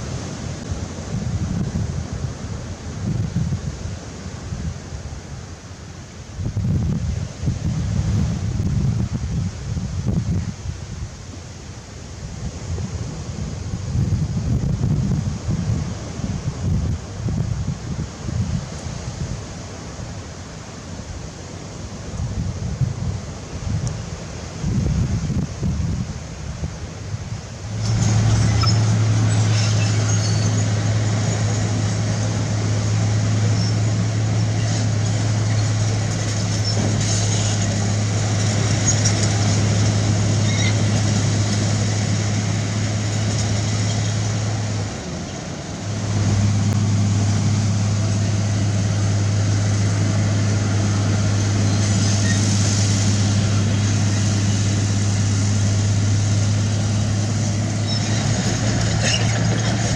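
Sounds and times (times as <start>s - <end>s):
diesel construction machine running: 27.2s - 59.9s.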